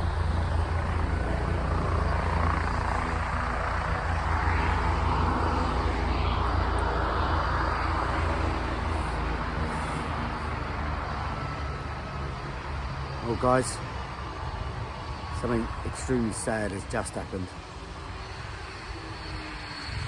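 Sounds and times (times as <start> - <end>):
aircraft engine drone: 0.0 - 20.0
low hum: 0.0 - 20.0.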